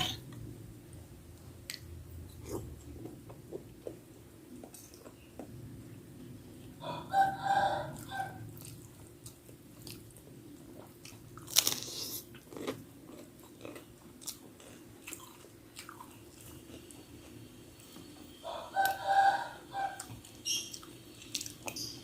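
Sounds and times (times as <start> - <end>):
rooster crowing: 6.8 - 8.4, 18.4 - 20.1
chewing with wet clicks: 8.5 - 17.4, 20.0 - 22.0
crunching bite: 11.4 - 16.0.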